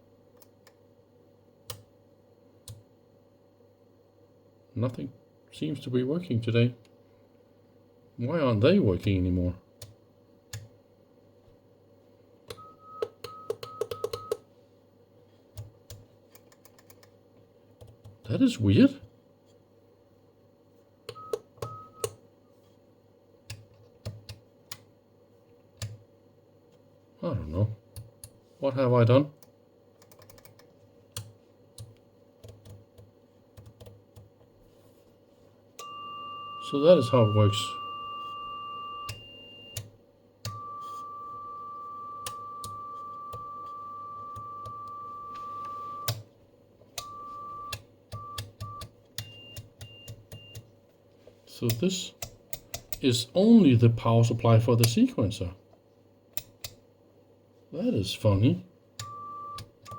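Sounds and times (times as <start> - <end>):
electronic test tone: 35.8 - 39.8, 40.5 - 46.1
short steady beeps: 35.8 - 39.8, 40.5 - 46.1, 47.0 - 50.6.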